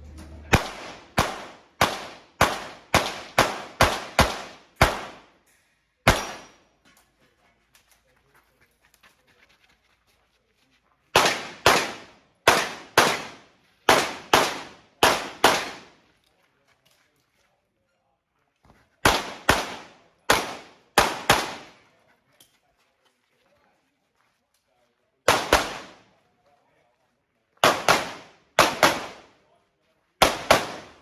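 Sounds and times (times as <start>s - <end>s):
pistol shots: 0.4s - 5.3s, 6.1s - 6.6s, 11.2s - 15.9s, 19.0s - 21.7s, 25.3s - 26.0s, 27.6s - 29.3s, 30.2s - 31.0s.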